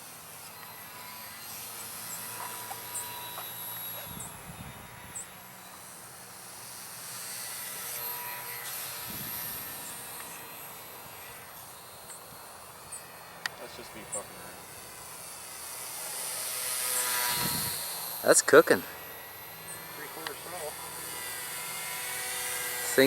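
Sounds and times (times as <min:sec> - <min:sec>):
model plane motor whining: 0:00.0 - 0:23.0.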